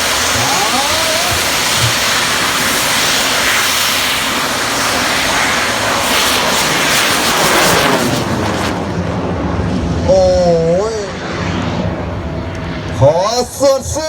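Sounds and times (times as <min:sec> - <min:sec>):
rocket motor roaring hiss: 0:00.0 - 0:13.0.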